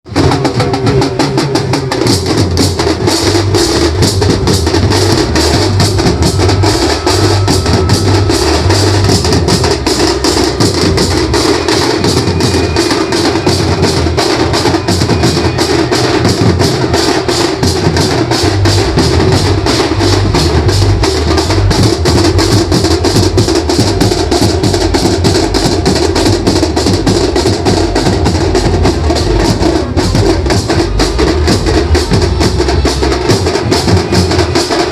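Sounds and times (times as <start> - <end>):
rapid drumming: 0.0 - 34.9
bass drum beat: 0.1 - 12.8, 13.4 - 34.9.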